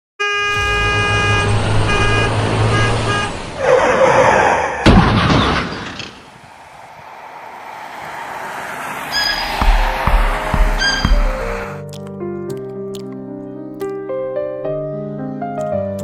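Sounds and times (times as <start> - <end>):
vehicle horn honking: 0.2 - 3.7, 10.8 - 11.7
sharp bang: 0.5 - 3.3, 4.8 - 6.7, 9.1 - 11.7
rushing noise: 0.5 - 5.0, 5.6 - 11.8
low engine rumble: 0.6 - 3.6, 6.6 - 11.7.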